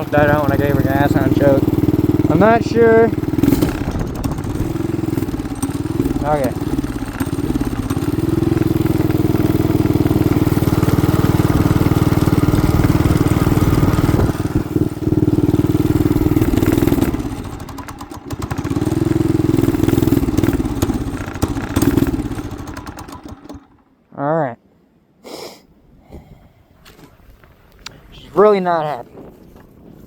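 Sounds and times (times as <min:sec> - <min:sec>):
small engine running rough: 0:00.0 - 0:23.9.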